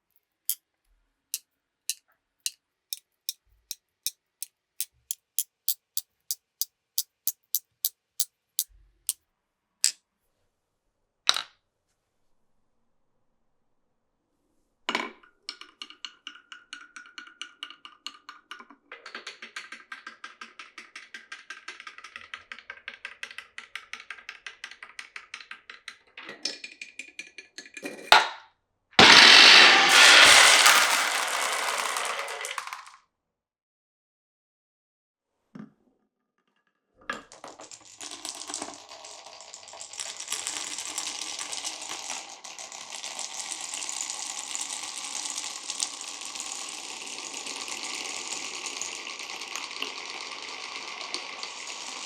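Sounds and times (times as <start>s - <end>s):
marbles clacking: 5.1s - 6.0s, 6.6s - 7.6s, 29.0s - 32.9s, 37.6s - 43.5s, 44.2s - 52.0s
marbles rattling along track: 7.0s - 7.7s, 29.0s - 33.0s, 37.4s - 52.0s
loud burst of noise: 29.0s - 32.8s.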